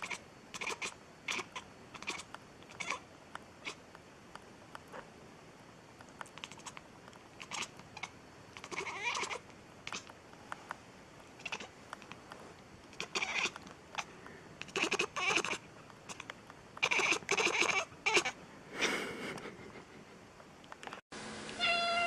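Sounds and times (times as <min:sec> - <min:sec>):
kitten meowing: 0:02.8 - 0:03.0, 0:08.6 - 0:10.0, 0:13.0 - 0:13.6, 0:21.6 - 0:22.0
faint clicks: 0:06.0 - 0:08.0, 0:11.9 - 0:14.8.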